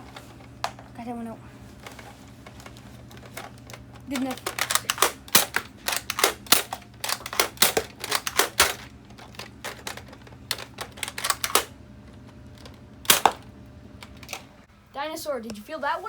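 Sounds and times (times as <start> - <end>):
toy dart blaster clacks and pops: 4.1 - 11.7, 12.6 - 13.5.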